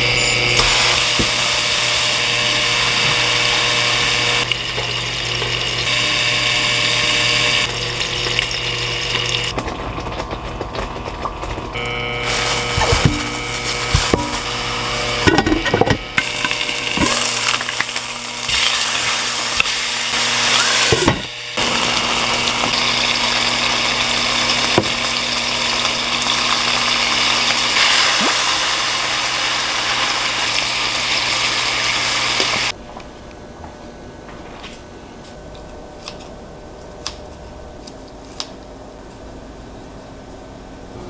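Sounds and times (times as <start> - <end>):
kitchen blender whirring: 0.0 - 32.8.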